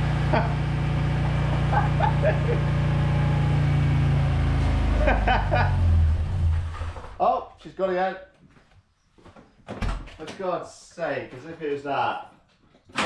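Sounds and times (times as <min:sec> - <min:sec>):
car engine idling: 0:00.0 - 0:07.2.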